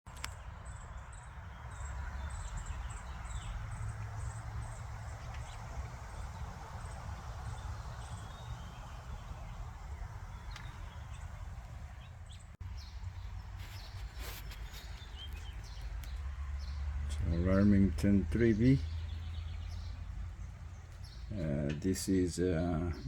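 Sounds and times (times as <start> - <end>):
low background rumble: 0.9 - 14.0.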